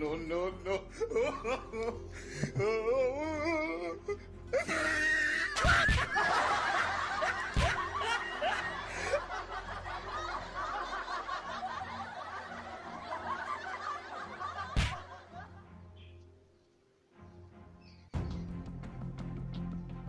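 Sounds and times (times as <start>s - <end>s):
people laughing and snickering: 0.6s - 15.7s.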